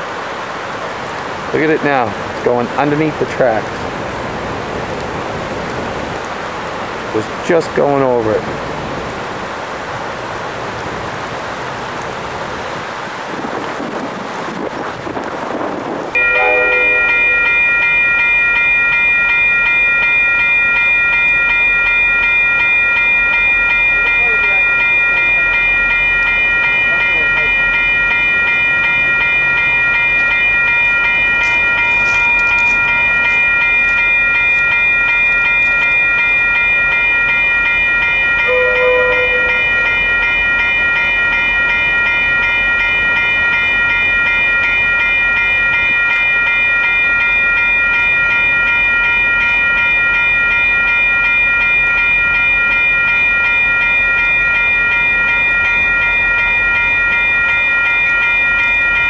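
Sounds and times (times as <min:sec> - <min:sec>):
train passing: 0:00.0 - 0:14.1, 0:14.9 - 0:59.0
crossing warning bell ringing: 0:00.8 - 0:12.0, 0:16.1 - 0:59.0
short low horn tone: 0:16.2 - 0:17.7, 0:38.5 - 0:40.0.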